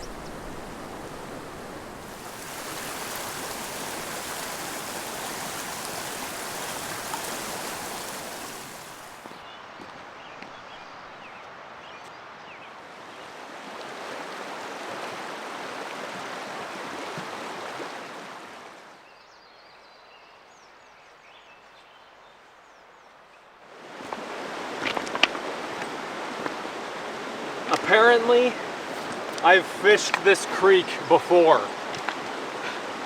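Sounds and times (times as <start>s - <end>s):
creek water rushing: 0.0s - 9.4s, 12.7s - 19.0s, 23.6s - 33.0s.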